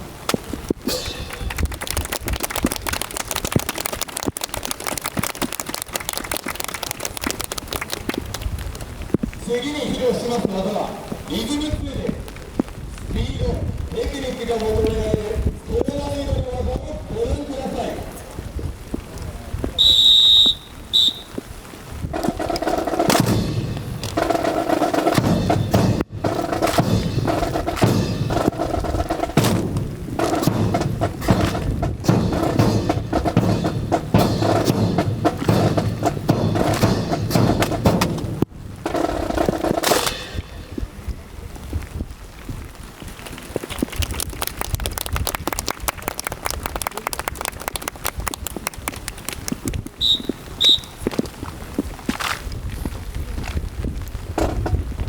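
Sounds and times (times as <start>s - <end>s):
rifles clacking and knocking: 0.9s - 8.3s
whistle blast: 19.8s - 21.4s, 50.0s - 51.0s.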